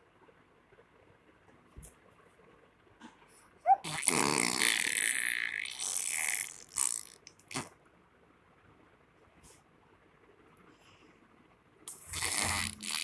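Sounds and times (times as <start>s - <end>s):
child squeaking: 3.7s - 4.0s
child making buzzing burp-like sound: 3.7s - 7.7s, 11.9s - 13.0s.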